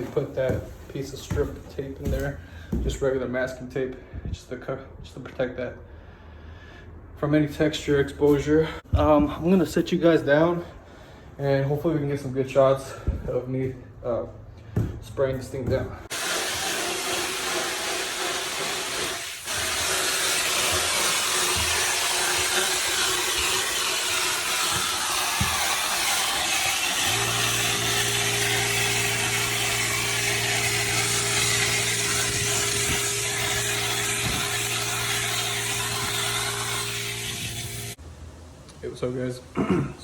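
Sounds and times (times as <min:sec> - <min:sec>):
air compressor motor hum: 0:16.1 - 0:38.0
spray gun hissing: 0:16.1 - 0:38.0.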